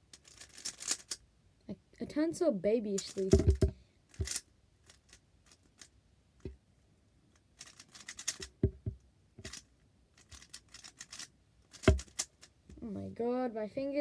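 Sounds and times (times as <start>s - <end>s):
speed cube clicking: 4.2s - 4.4s, 7.6s - 8.6s, 10.2s - 12.4s.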